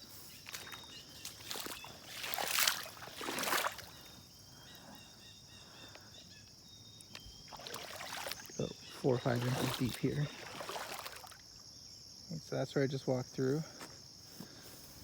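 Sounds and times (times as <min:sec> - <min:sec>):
insect drone: 0:00.0 - 0:15.0
boots splashing through water: 0:00.3 - 0:04.1, 0:07.4 - 0:11.5.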